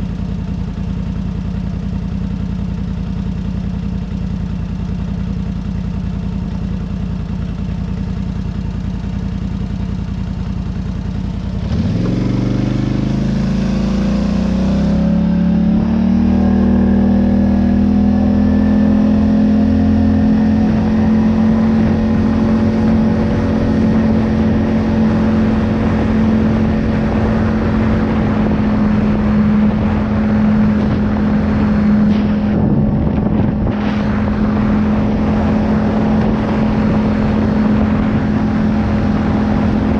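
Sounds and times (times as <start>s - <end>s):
vehicle engine idling and revving: 0.0s - 39.9s.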